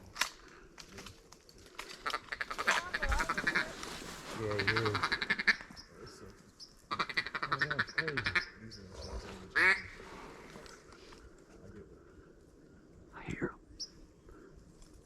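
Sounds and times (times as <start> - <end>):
duck quacking: 4.6 - 5.7, 6.9 - 8.6, 9.6 - 10.0.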